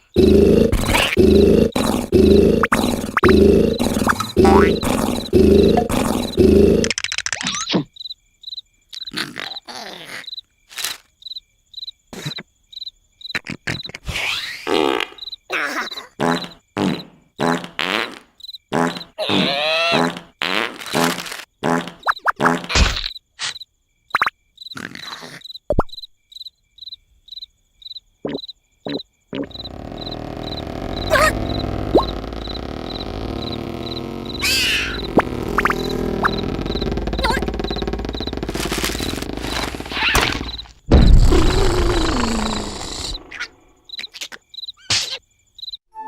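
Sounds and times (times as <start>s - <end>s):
cricket chirping: 0.0s - 20.3s, 20.9s - 46.0s
cartoon sound effects: 2.1s - 7.8s, 19.2s - 20.2s, 28.3s - 40.6s.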